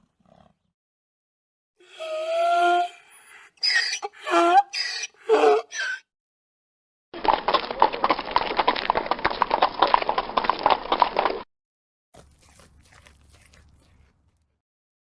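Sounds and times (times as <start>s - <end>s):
galloping hooves: 7.2s - 11.4s.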